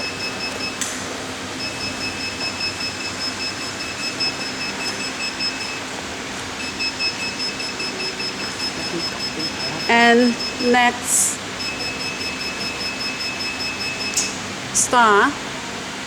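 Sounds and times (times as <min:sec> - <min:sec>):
rapid high electronic beeps: 0:00.0 - 0:00.8, 0:01.6 - 0:05.9, 0:06.5 - 0:14.2
machine hiss and hum: 0:00.0 - 0:16.0.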